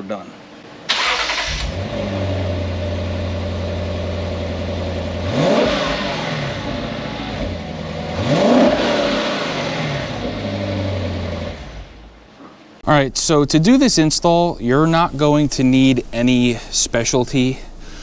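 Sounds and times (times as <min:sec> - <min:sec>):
car engine idling and revving: 0:01.2 - 0:12.4.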